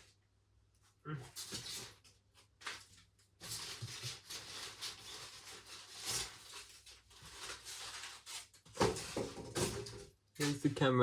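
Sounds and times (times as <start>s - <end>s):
packaging rustling: 1.4s - 10.6s.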